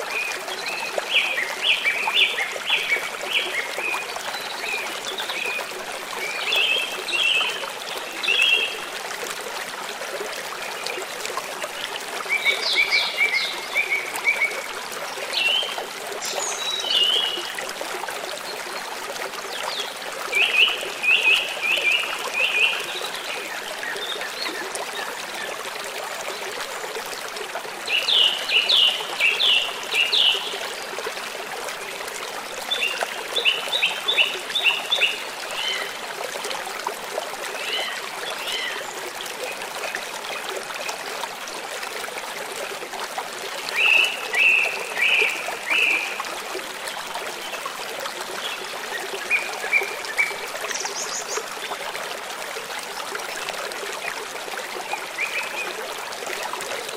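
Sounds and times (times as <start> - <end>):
stream running: 0.0 - 56.9.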